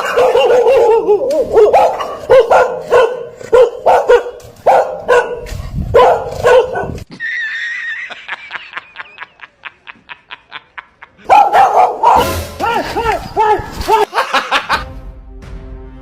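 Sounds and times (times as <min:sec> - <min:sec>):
dog barking: 0:00.0 - 0:07.0, 0:11.2 - 0:12.4.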